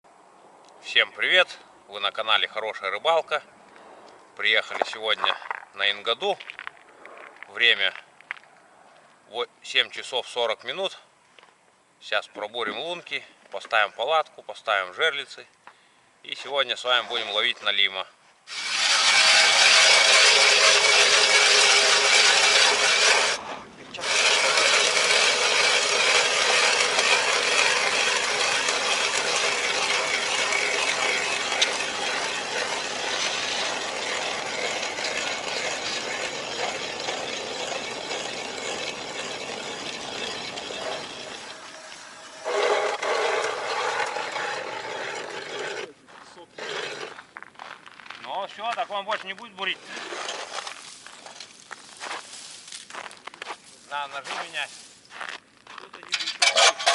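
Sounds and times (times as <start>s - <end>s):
ice auger scraping and grinding: 18.5s - 47.8s, 49.0s - 55.3s, 56.0s - 56.9s.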